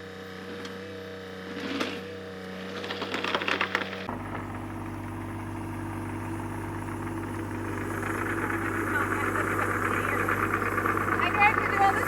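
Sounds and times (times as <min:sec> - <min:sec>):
engine idling: 0:02.6 - 0:12.0.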